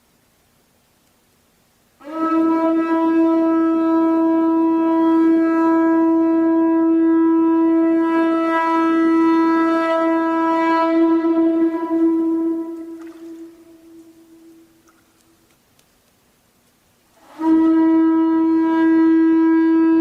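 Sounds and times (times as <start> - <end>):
conch shell trumpet note: 2.0 - 15.0, 17.2 - 20.0.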